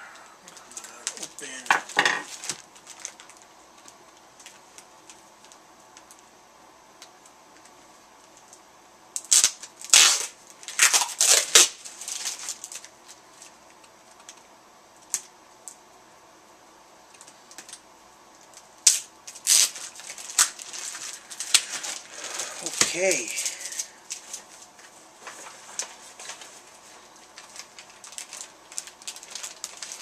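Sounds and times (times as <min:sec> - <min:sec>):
packaging rustling and ripping: 0:00.5 - 0:06.2, 0:09.2 - 0:14.4, 0:18.4 - 0:30.0.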